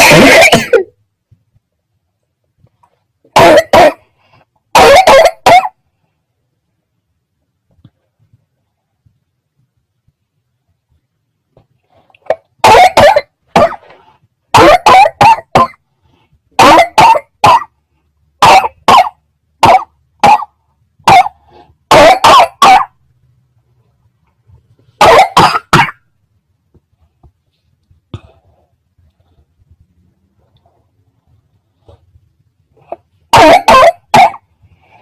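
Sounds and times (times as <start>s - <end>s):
person coughing: 0.0s - 1.0s, 3.4s - 4.1s, 12.3s - 14.0s, 25.0s - 26.0s, 33.3s - 34.4s.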